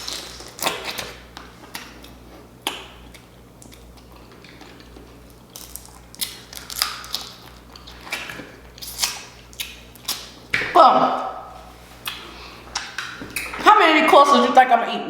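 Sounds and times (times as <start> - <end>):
clicks and crackles of crab shells: 0.0 - 10.6
steady low hum: 0.0 - 15.0.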